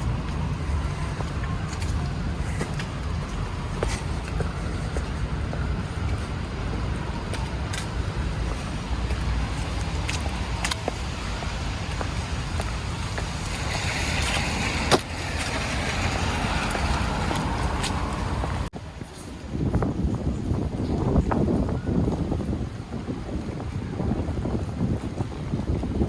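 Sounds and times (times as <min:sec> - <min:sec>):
traffic rumble and tyre noise: 0:00.0 - 0:26.0
car passing: 0:08.8 - 0:18.7.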